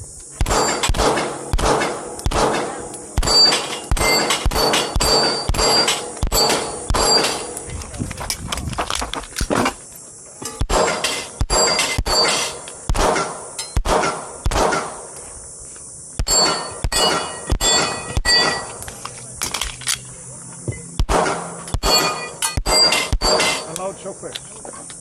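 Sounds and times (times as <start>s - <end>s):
handgun shots: 0.4s - 7.6s, 10.6s - 15.0s, 21.0s - 23.7s
steel plate clanging: 3.2s - 7.6s, 10.4s - 12.7s, 16.3s - 18.8s, 21.3s - 23.8s.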